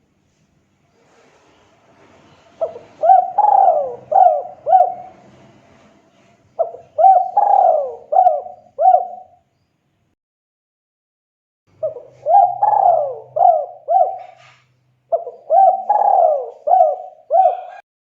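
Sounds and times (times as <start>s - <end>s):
dove cooing: 2.5s - 5.2s, 6.6s - 9.4s, 11.8s - 17.8s.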